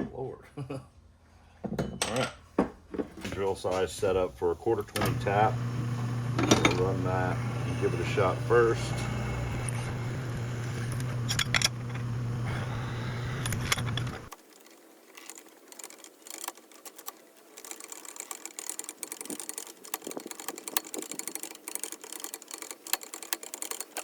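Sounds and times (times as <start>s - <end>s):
electric drill drilling steel: 5.1s - 14.4s
metal parts clicking: 11.0s - 12.0s, 13.4s - 24.0s.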